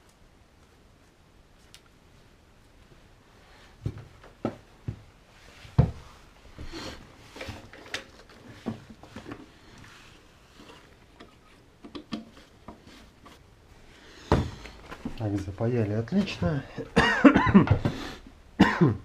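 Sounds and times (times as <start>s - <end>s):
tools knocking and clicking: 11.2s - 12.3s.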